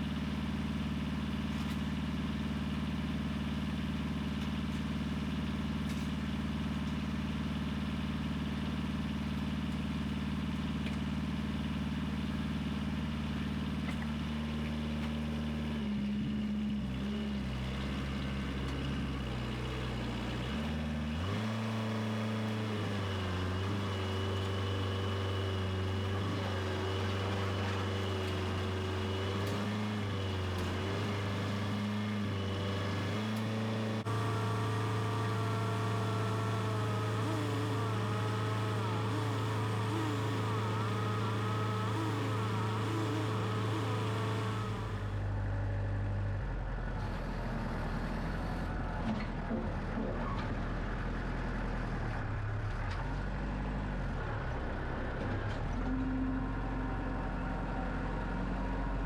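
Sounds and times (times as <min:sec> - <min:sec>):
sawmill engine running: 0:17.4 - 0:45.4
wavering higher tone: 0:34.4 - 0:45.1.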